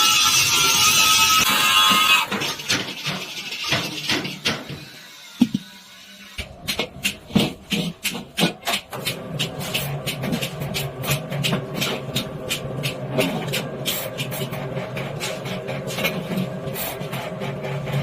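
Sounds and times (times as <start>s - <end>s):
scraping and knocking on iron pan: 6.6s - 18.0s.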